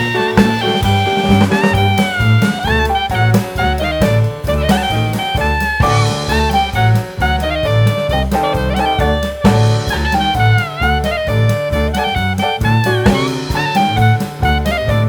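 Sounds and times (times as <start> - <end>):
bass line: 0.0 - 15.0
drums: 0.0 - 15.0
saxophone melody: 0.0 - 15.0.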